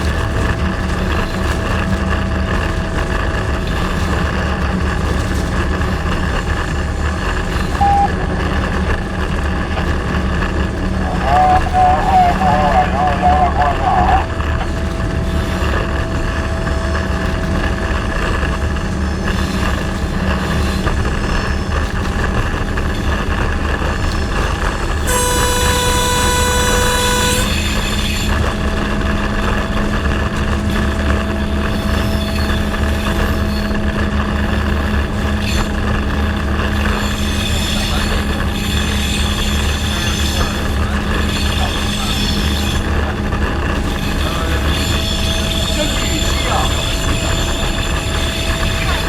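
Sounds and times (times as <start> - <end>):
diesel locomotive engine drone: 0.0 - 49.0
locomotive horn blast: 7.6 - 17.7, 24.4 - 49.0.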